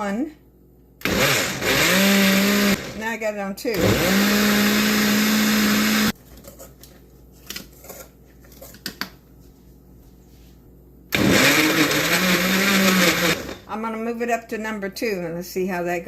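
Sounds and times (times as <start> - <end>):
blender motor running: 1.0 - 3.0, 3.8 - 6.2, 11.1 - 13.7.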